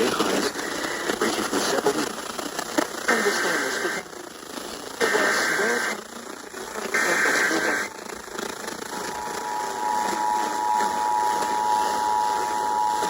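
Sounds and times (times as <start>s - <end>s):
harsh data buzz: 0.0s - 13.0s
radio hiss: 0.0s - 13.0s
two-tone alert signal: 9.2s - 13.0s.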